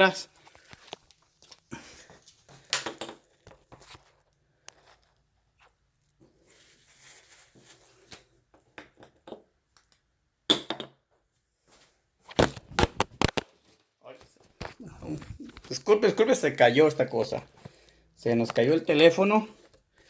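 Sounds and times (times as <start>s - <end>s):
phone falling and bouncing: 10.5s - 11.0s, 12.3s - 13.5s.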